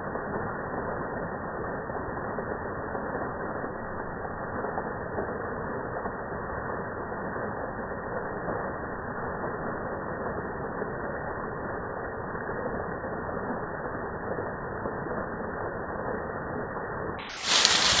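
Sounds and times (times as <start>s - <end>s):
muffled waterfall rushing: 17.2s - 18.0s.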